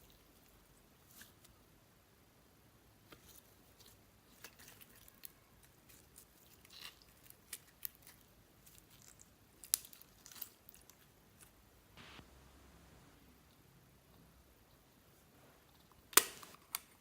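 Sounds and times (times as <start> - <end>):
slime squishing: 3.1 - 11.5.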